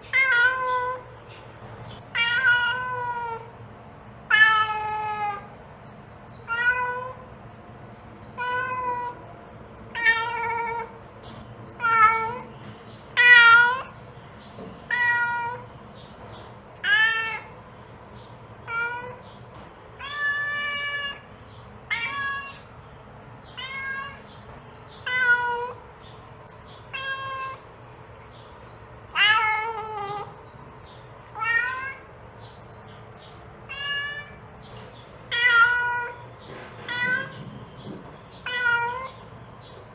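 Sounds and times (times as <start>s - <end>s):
cat meowing: 0.1s - 1.1s, 2.1s - 3.5s, 4.3s - 5.5s, 6.4s - 7.2s, 8.3s - 9.2s, 9.9s - 11.0s, 11.8s - 12.5s, 13.1s - 14.0s, 14.9s - 15.7s, 16.8s - 17.6s, 18.6s - 19.2s, 20.0s - 22.7s, 23.5s - 24.4s, 25.0s - 25.9s, 26.8s - 27.6s, 29.1s - 30.4s, 31.3s - 32.1s, 33.6s - 34.4s, 35.3s - 37.4s, 38.4s - 39.3s.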